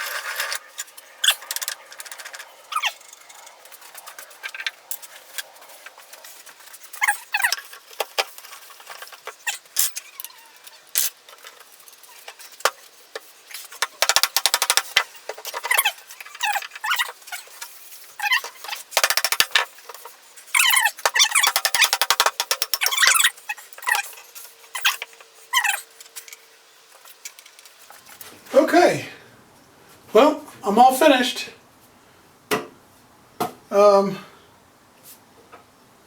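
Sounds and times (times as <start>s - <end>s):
rapid metal clicking: 13.8s - 15.1s, 21.1s - 23.2s.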